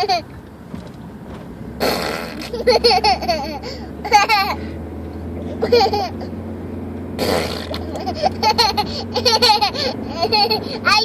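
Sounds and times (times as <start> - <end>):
child laughing: 0.0 - 0.3, 2.3 - 4.8, 5.5 - 6.3, 7.6 - 11.0
child making farty mouth noises: 1.8 - 2.5, 7.2 - 7.9.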